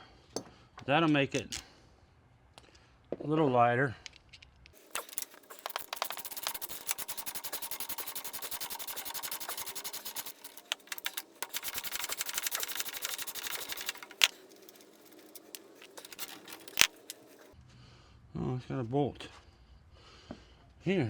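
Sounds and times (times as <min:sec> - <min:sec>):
socket ratchet clicking: 0:04.8 - 0:17.6.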